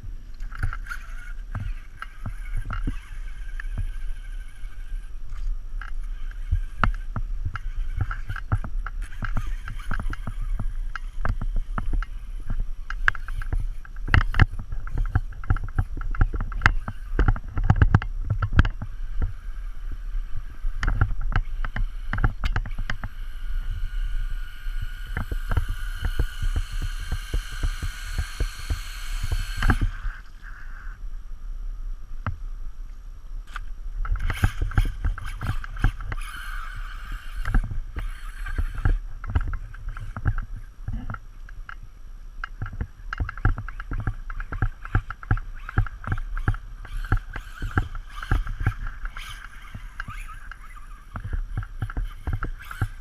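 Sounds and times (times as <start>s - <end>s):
high electric motor whine: 0.0s - 53.0s
sharp clicks and knocks: 5.3s - 19.4s, 20.8s - 23.2s, 24.7s - 30.2s, 33.5s - 41.8s, 42.4s - 53.0s.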